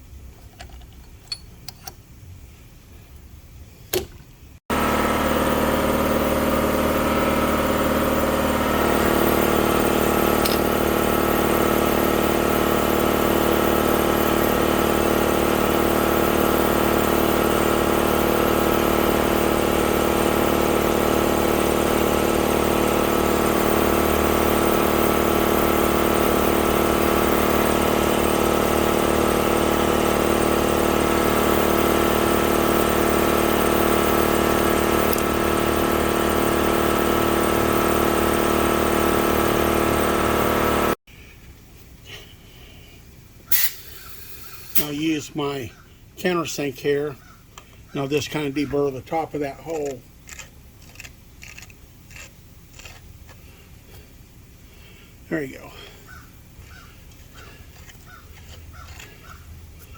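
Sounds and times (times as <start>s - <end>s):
shop machine humming: 3.9s - 41.0s, 43.5s - 45.3s, 56.6s - 59.9s.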